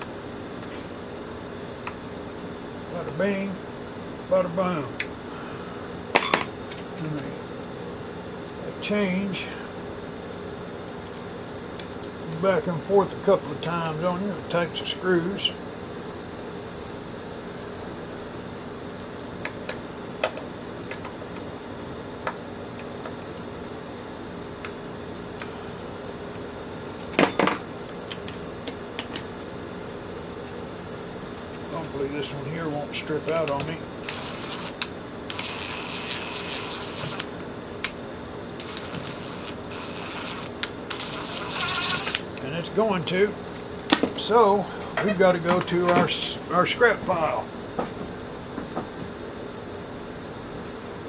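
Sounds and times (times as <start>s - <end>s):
steady background hum: 0.0s - 51.0s
screwdriver turning screw in plastic: 34.0s - 37.3s, 38.6s - 42.3s.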